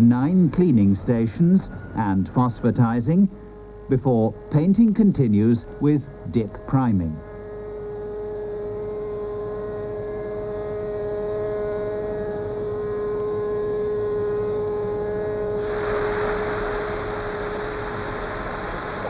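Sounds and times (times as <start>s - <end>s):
factory machinery drone: 0.0s - 6.7s, 14.7s - 19.0s
loud even hiss: 15.6s - 19.0s.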